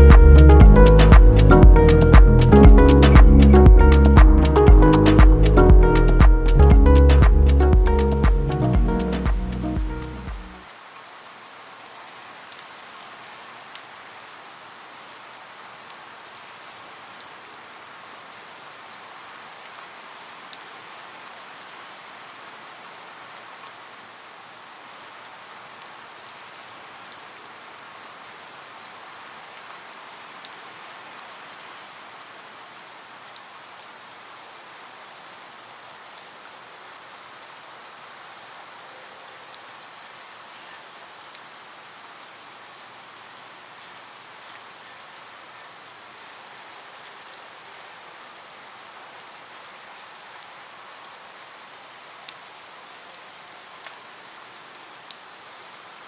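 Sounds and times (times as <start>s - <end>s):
raindrops ticking: 0.0s - 10.6s
steady rain hiss: 0.0s - 56.0s.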